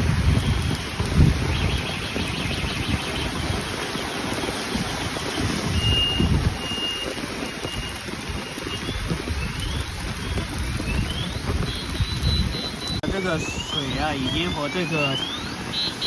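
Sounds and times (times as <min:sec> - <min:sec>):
heavy rain hissing: 0:00.0 - 0:16.0
vehicles moving through floodwater: 0:00.0 - 0:16.0
wind rumbling on microphone: 0:00.0 - 0:16.0
high electronic warning beep: 0:05.7 - 0:16.0.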